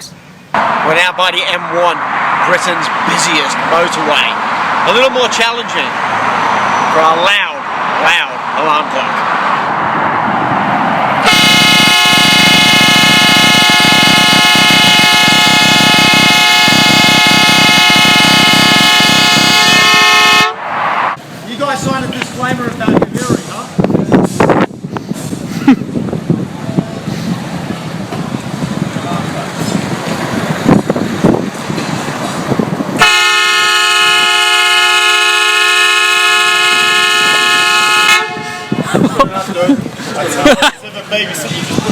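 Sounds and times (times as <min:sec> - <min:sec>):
rushing outdoor noise: 0:00.0 - 0:41.9
loud train horn blast: 0:11.2 - 0:20.7, 0:33.0 - 0:38.8.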